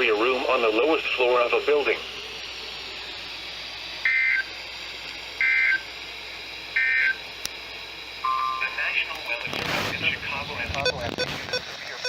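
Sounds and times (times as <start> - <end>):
faint radio hiss: 8.6 - 12.0.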